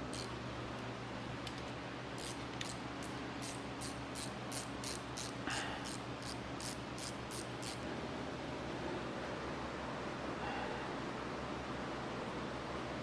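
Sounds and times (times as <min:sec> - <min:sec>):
steady low hum: 0:00.0 - 0:13.0
ratchet wrench clicking: 0:00.1 - 0:00.3, 0:02.2 - 0:07.8.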